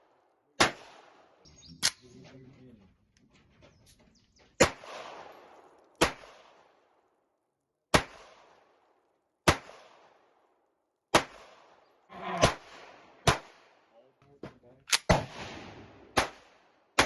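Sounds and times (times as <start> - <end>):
pistol shots with echo: 0.0 - 2.0, 4.6 - 7.1, 7.9 - 13.9, 14.9 - 17.0.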